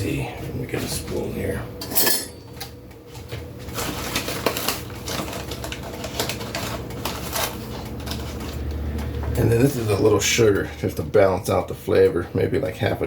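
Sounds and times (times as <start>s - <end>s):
kitchen utensils clattering: 1.8s - 2.6s, 9.4s - 10.7s.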